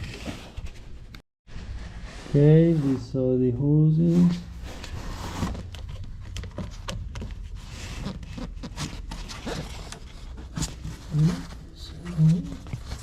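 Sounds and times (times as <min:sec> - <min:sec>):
rustling: 0:04.2 - 0:13.0.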